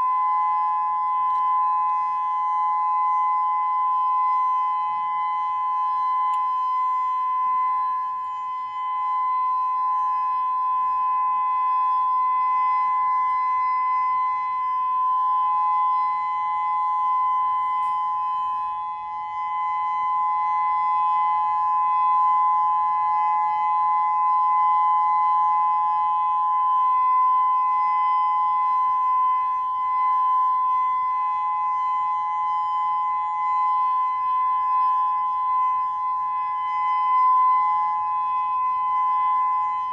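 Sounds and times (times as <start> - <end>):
electronic siren steady tone: 0.0 - 39.9.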